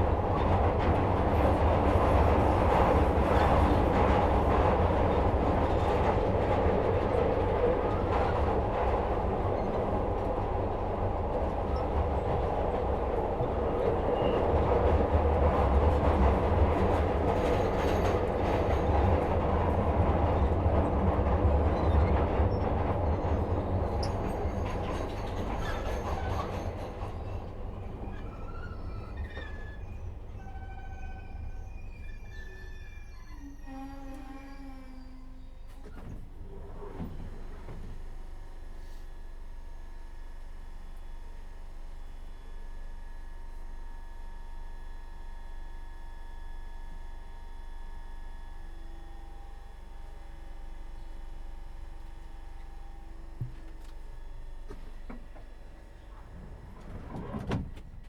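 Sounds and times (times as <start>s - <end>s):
heavy rumble of train wheels: 0.0s - 42.2s, 43.8s - 58.0s
faint high squeals: 28.1s - 36.6s.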